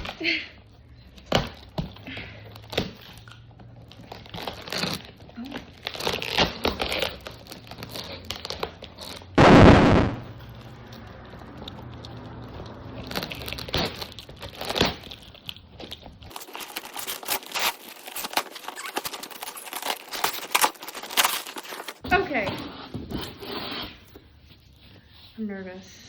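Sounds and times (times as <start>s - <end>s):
packaging ripping: 5.7s - 9.2s, 16.3s - 22.0s
packaging crinkling: 13.0s - 22.0s.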